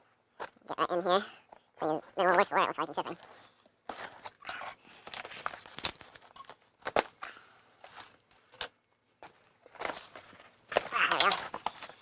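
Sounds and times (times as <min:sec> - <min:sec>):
cardboard and tape tearing: 0:01.9 - 0:07.2, 0:09.3 - 0:12.0
packing rustling: 0:07.8 - 0:12.0.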